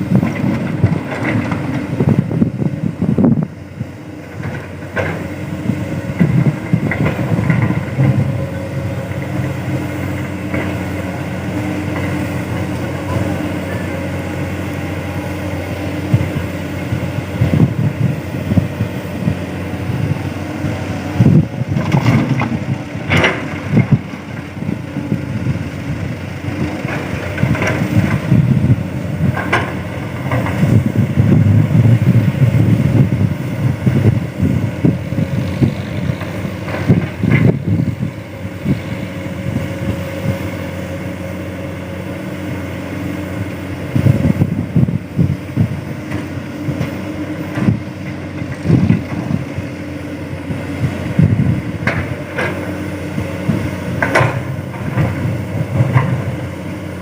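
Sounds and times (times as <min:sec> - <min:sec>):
diesel engines running: 0:00.0 - 0:57.0
rocky soil knocking and clattering: 0:04.2 - 0:09.4, 0:21.2 - 0:25.2.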